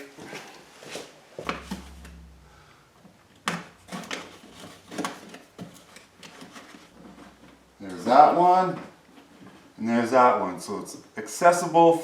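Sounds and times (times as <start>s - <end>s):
low hum: 1.4s - 3.9s.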